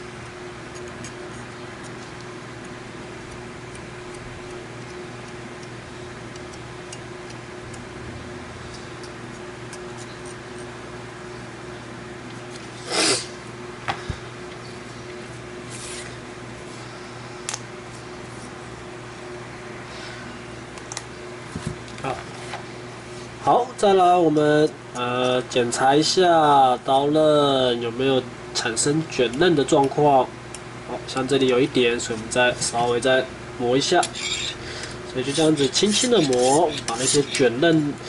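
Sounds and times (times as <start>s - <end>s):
steady low hum: 0.0s - 38.0s
sharpening stone rasping on knife: 34.0s - 34.6s, 35.2s - 37.4s.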